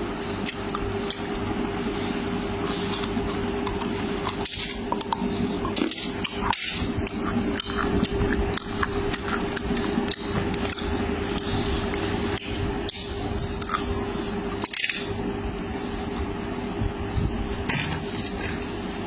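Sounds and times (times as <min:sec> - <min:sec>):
steady hum: 0:00.0 - 0:19.0
wet chewing mouth sounds: 0:02.2 - 0:16.4.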